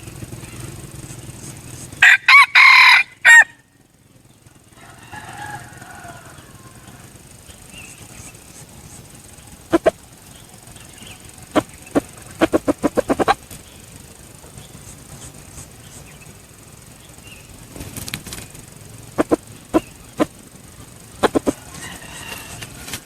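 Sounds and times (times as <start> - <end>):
wings flapping: 0.0 - 3.5, 4.8 - 23.0
junglefowl clucking: 4.7 - 10.2, 10.8 - 13.6, 19.0 - 20.4, 21.0 - 23.0.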